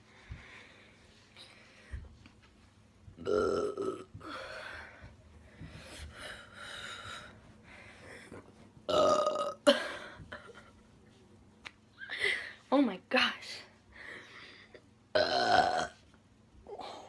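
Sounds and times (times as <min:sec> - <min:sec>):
breaths: 0:00.0 - 0:02.2, 0:04.2 - 0:08.4, 0:13.9 - 0:14.8
woman burping: 0:03.2 - 0:04.1, 0:08.9 - 0:10.5, 0:15.2 - 0:16.0.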